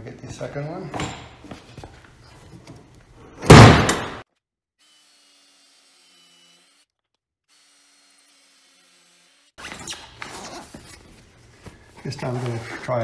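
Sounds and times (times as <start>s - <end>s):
loud metal clunk: 3.5s - 4.2s.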